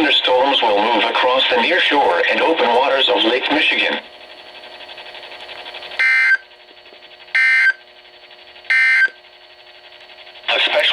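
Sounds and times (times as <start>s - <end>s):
faint radio hum: 0.0s - 4.1s, 10.4s - 10.9s
digital data tone bursts: 6.0s - 6.5s, 7.3s - 7.8s, 8.7s - 9.2s.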